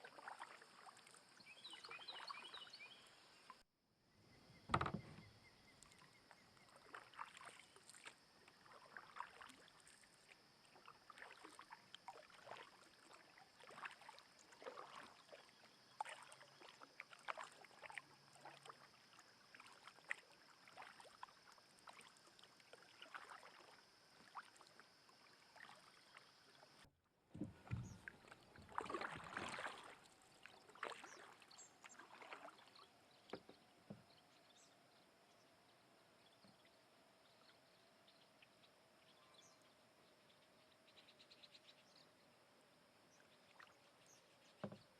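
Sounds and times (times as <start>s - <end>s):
paddle splashing in water: 0.0s - 3.1s, 4.7s - 34.2s, 43.5s - 44.9s.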